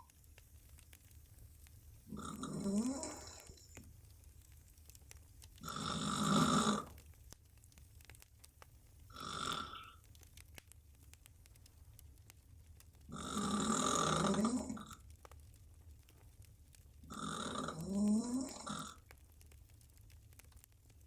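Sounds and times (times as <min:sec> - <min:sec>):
woman snoring loudly: 0:02.1 - 0:03.6, 0:05.6 - 0:06.9, 0:09.1 - 0:10.0, 0:13.1 - 0:14.9, 0:17.1 - 0:18.9.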